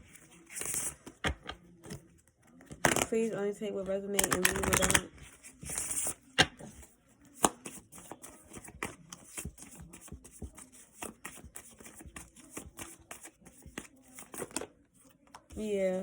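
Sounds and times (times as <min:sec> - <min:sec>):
cards shuffling: 0:00.1 - 0:02.0, 0:04.2 - 0:15.5.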